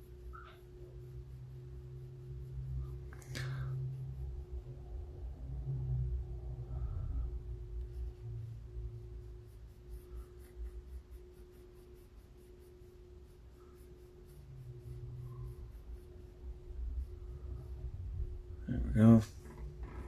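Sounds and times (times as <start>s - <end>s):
low hum of bench equipment: 0.0s - 20.0s.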